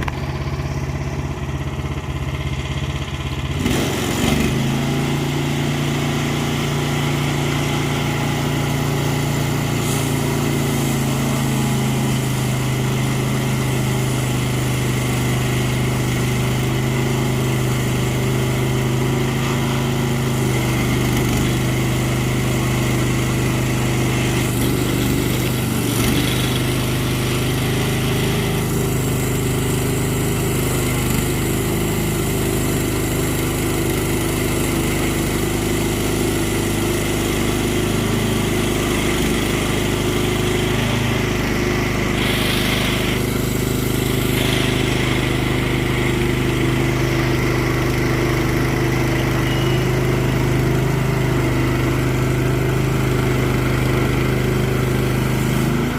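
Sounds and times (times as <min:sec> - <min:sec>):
small gas engine running: 0:00.0 - 0:55.9.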